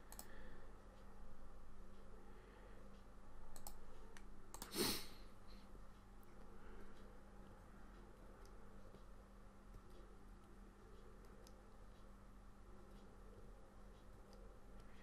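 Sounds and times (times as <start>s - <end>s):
faint electrical hum: 0.0s - 15.0s
mouse and keyboard clicks: 3.5s - 4.8s.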